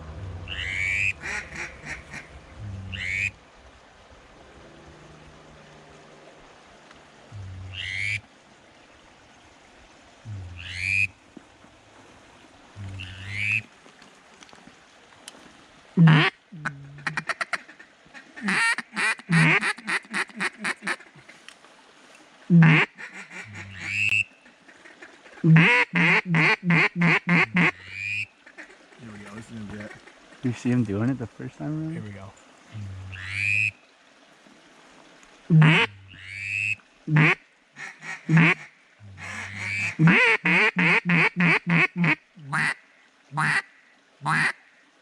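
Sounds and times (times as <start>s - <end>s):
duck quacking: 0.5s - 2.3s, 2.9s - 3.3s, 16.0s - 16.3s, 18.4s - 21.0s, 22.5s - 24.2s, 25.4s - 30.1s, 35.5s - 42.8s, 43.4s - 43.6s, 44.2s - 44.6s.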